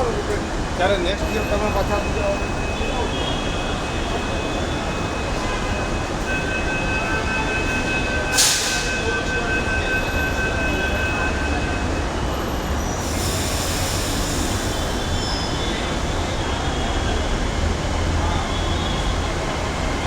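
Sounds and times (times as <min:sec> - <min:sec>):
train rumbling: 0:03.7 - 0:20.0.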